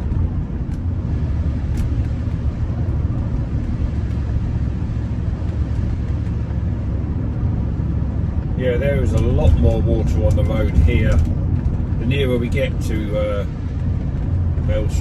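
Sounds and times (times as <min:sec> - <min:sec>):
car driving heard from inside: 0:00.0 - 0:15.0.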